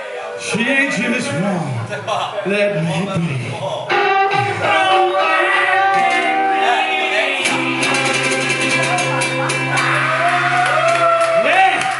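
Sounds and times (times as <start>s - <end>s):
blues band playing: 3.8s - 11.4s.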